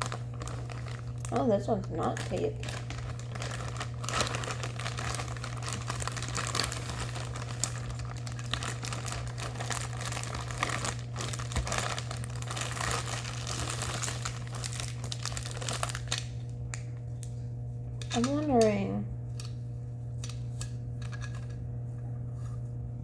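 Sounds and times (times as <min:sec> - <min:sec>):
packaging crinkling: 0:00.0 - 0:16.5.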